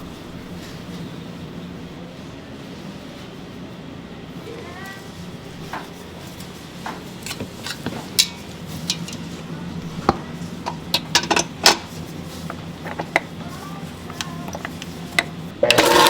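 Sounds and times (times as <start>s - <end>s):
metal utensils clinking: 7.1s - 16.0s.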